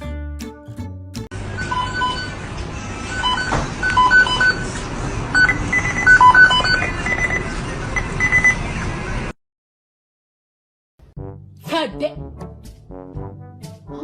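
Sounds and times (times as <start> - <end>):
busy background noise: 1.4 - 9.3.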